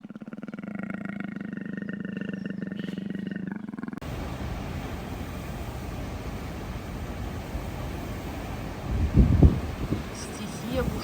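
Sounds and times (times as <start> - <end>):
wind buffeting microphone: 4.0 - 11.0.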